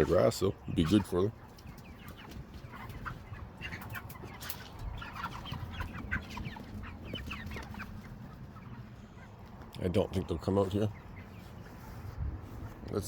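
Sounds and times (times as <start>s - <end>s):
chickens peeping and clucking: 0.0s - 13.0s.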